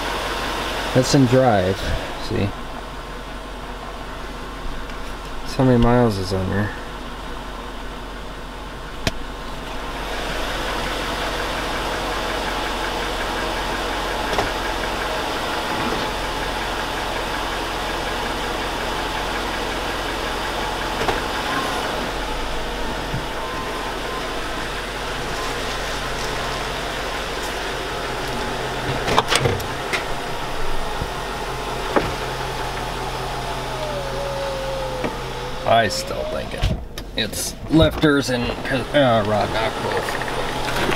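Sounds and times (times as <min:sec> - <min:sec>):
knocking engine running: 0:00.0 - 0:40.9
sharp engine clicks: 0:39.2 - 0:40.9.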